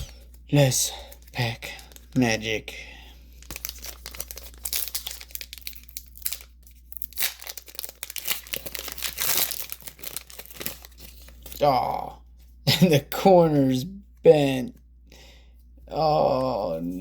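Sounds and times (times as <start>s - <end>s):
foil wrapper tearing and crinkling: 3.4s - 11.6s.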